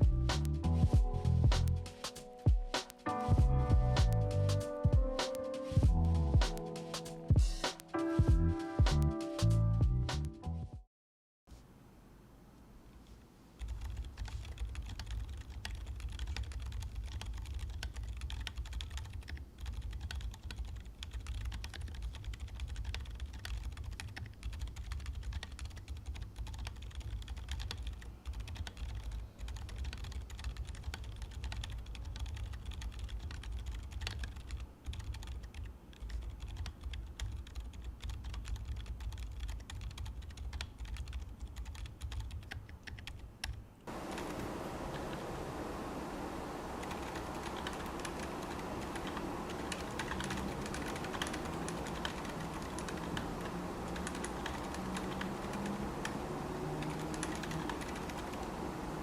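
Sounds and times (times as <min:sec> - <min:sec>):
mechanical keyboard typing: 0:13.6 - 0:45.2, 0:46.8 - 0:59.0.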